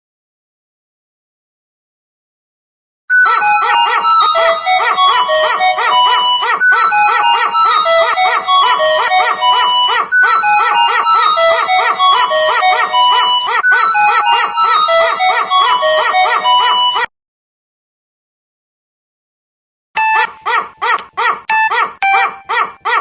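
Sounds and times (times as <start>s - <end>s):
ringtone melody of dog barks: 3.1s - 17.1s, 20.0s - 23.0s.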